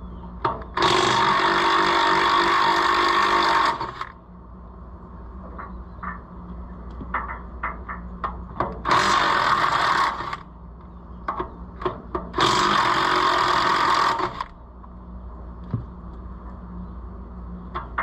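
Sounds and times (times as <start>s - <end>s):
impact wrench running: 12.4s - 14.5s.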